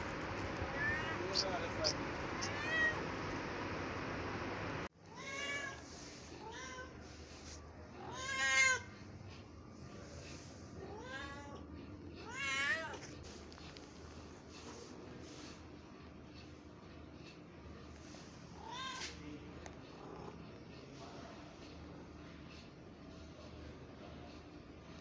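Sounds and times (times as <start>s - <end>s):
cat meowing: 0.6s - 1.8s, 2.4s - 3.0s.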